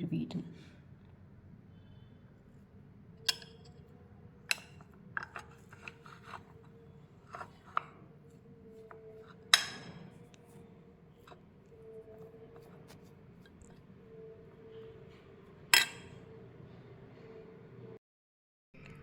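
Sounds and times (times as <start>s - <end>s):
faint steady hum: 0.0s - 18.0s
spoon clinking in a container: 3.2s - 3.8s, 4.5s - 6.6s, 15.7s - 16.2s.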